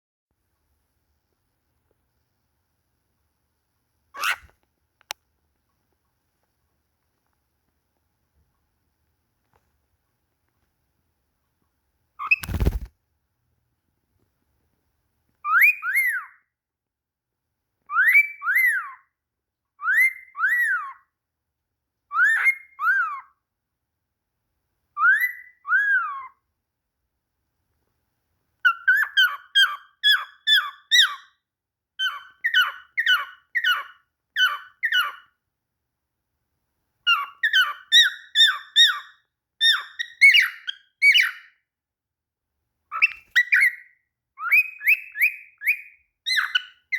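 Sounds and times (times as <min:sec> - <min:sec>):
cockatiel whistling: 0:28.7 - 0:31.3, 0:37.1 - 0:41.5, 0:42.9 - 0:46.9.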